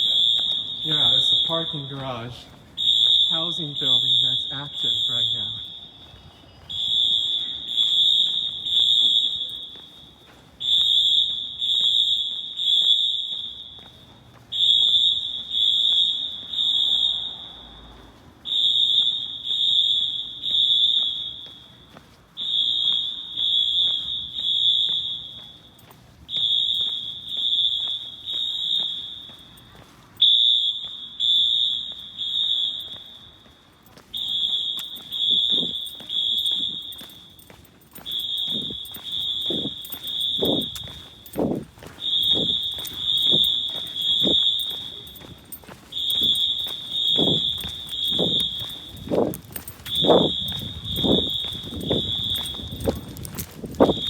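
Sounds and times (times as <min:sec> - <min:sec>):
fire alarm horn blasts: 0:00.0 - 0:54.0.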